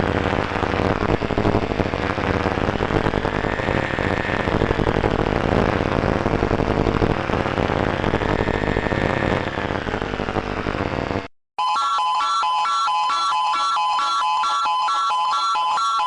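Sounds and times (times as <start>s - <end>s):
loud steady rumbling: 0.0s - 11.3s.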